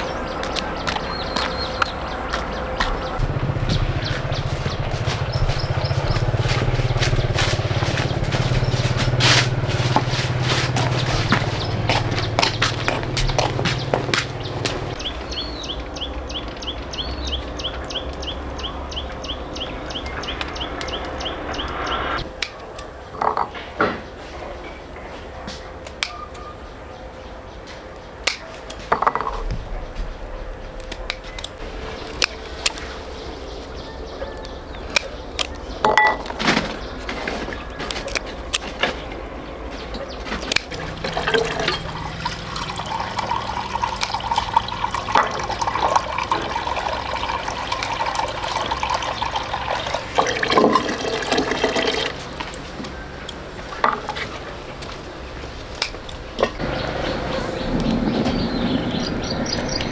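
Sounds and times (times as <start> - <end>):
water pouring and splashing: 3.3 - 15.0, 40.4 - 55.1.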